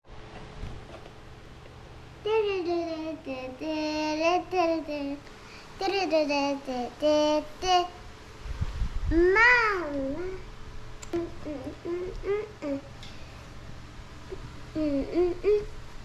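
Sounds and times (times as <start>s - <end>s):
girl singing: 2.2s - 8.1s, 9.1s - 10.5s, 11.1s - 12.9s, 14.8s - 15.7s.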